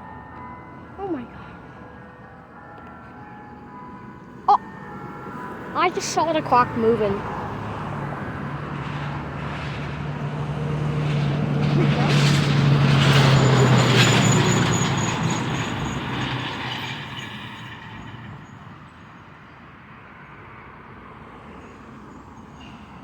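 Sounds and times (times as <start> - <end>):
vehicle passing by: 4.9 - 16.7.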